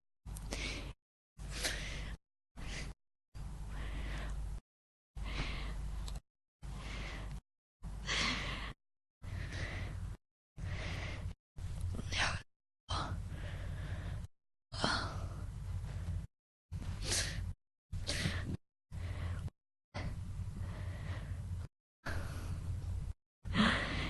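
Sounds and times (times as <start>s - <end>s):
person breathing and sighing: 6.6s - 11.4s, 12.0s - 16.2s, 17.0s - 22.8s, 23.4s - 24.0s.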